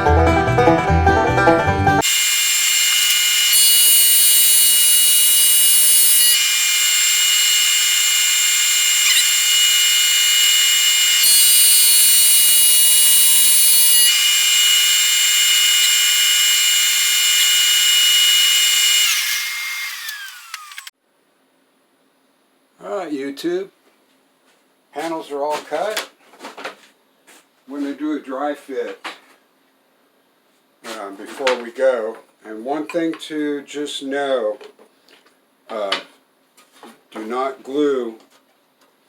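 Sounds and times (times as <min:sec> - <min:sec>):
power tool motor whine: 0:02.0 - 0:20.9.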